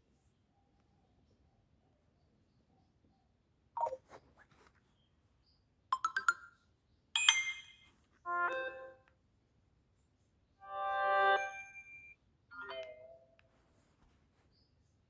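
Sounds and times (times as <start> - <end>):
phone alert tones: 6.0 - 6.5.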